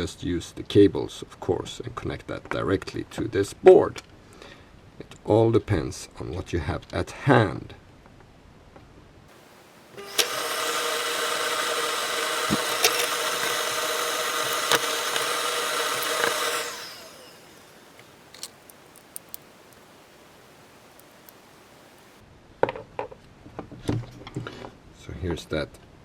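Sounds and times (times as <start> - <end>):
small electric motor running: 9.4 - 19.8.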